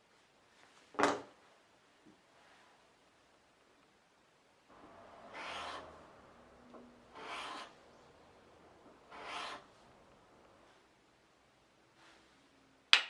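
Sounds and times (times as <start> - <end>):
hand plane scraping wood: 4.8 - 8.2, 8.8 - 10.0.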